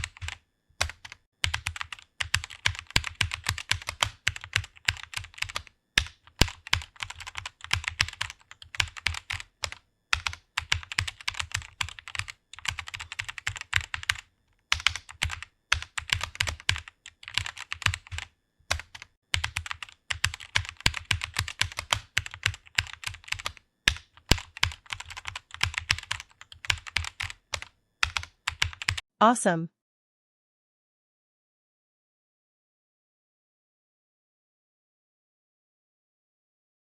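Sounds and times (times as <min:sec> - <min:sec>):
typing on computer keyboard: 0:00.0 - 0:29.0.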